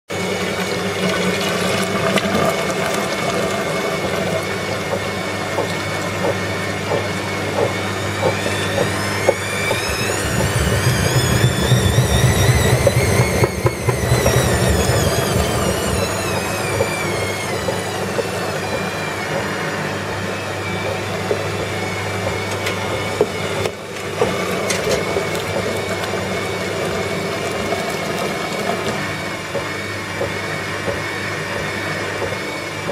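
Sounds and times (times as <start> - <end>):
washing machine motor whine: 0.1 - 32.9
heavy rumble: 8.7 - 17.0.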